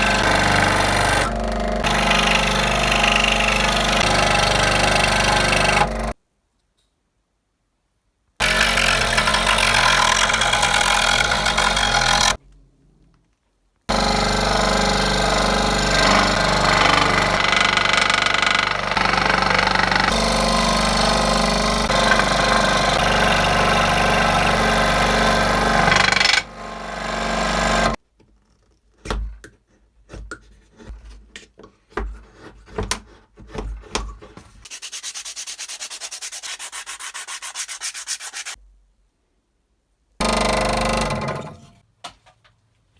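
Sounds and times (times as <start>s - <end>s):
power tool cutting wood: 0.0s - 6.2s, 8.4s - 12.4s, 13.9s - 28.0s.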